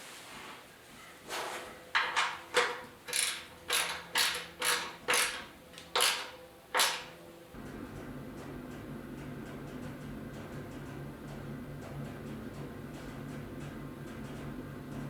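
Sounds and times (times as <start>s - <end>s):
low steady hum: 7.5s - 15.0s.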